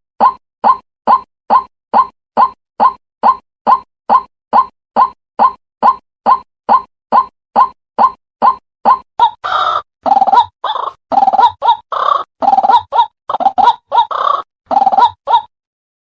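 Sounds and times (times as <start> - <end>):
short croaking bird calls: 9.2 - 15.5.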